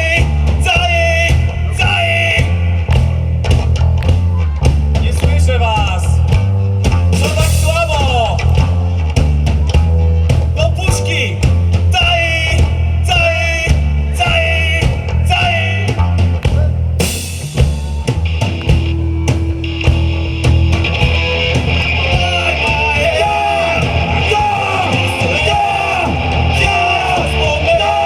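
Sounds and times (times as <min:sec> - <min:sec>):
bass guitar: 0:00.0 - 0:28.0
drum kit beating: 0:00.0 - 0:28.0
electric guitars: 0:00.0 - 0:28.0
bending lead guitar melody: 0:15.9 - 0:28.0.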